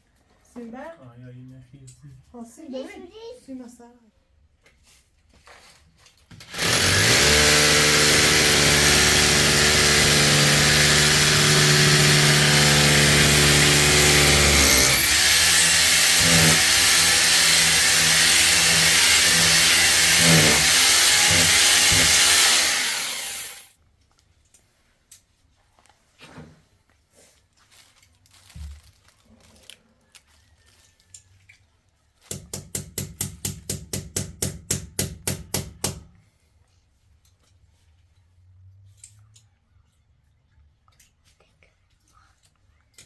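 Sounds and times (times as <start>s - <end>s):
electric power tool motor running: 6.5s - 23.6s.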